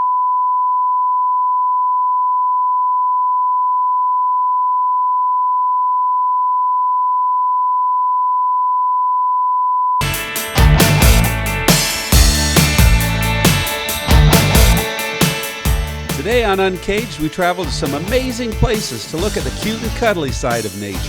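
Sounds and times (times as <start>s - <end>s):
rock music: 10.0s - 21.0s.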